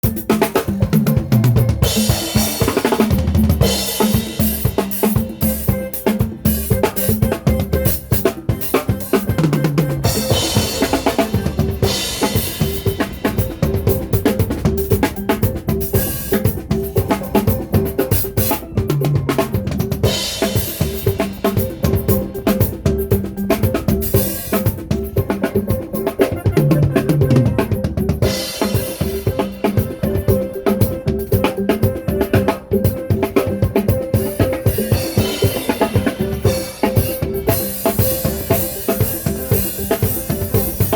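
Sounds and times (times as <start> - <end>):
live band playing: 0.0 - 40.9.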